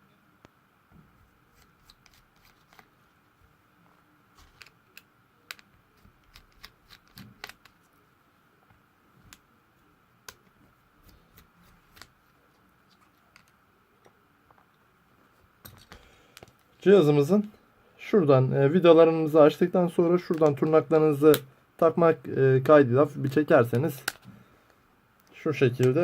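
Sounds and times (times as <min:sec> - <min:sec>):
faint steady hum: 0:00.0 - 0:26.0
plastic phone parts handled: 0:01.5 - 0:03.2, 0:04.3 - 0:07.9, 0:10.2 - 0:13.6, 0:15.6 - 0:16.7, 0:20.2 - 0:20.7, 0:23.7 - 0:24.4.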